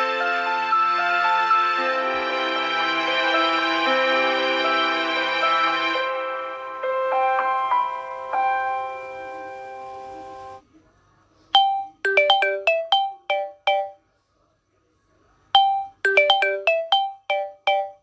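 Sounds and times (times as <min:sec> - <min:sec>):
phone ringtone melody: 0:11.6 - 0:14.0, 0:15.6 - 0:18.0
sustained ringtone chord: 0:11.6 - 0:14.0, 0:15.6 - 0:18.0.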